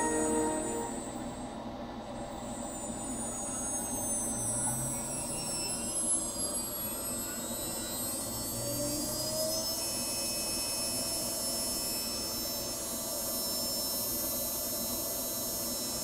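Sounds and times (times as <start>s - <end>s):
machine motors humming: 0.0s - 1.4s
high motor whine: 0.0s - 16.0s.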